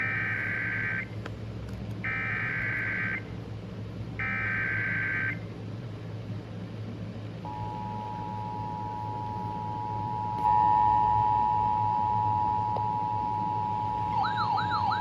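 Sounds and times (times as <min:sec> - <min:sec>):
two-tone attention signal: 0:07.5 - 0:14.8.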